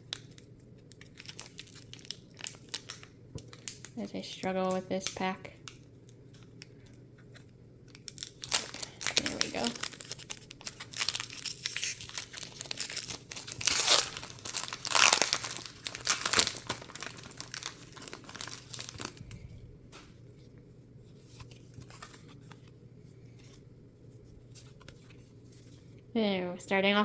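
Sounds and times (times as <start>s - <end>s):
foil wrapper crinkling and tearing: 0.0s - 7.0s, 7.8s - 19.4s.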